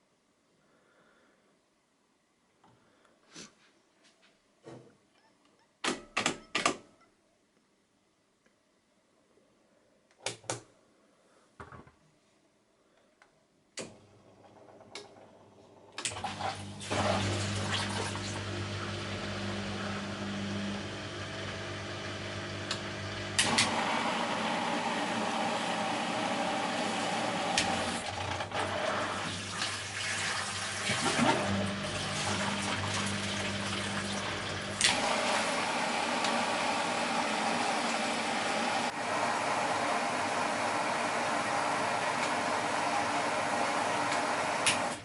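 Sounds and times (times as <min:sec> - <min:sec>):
water rushing into washing machine: 0:16.0 - 0:45.0.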